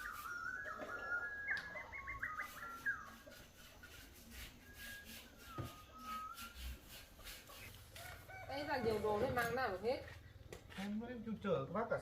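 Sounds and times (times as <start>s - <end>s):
faint scratchy strokes: 0.0s - 0.8s, 2.1s - 11.2s
bird singing whistled notes: 0.0s - 7.2s.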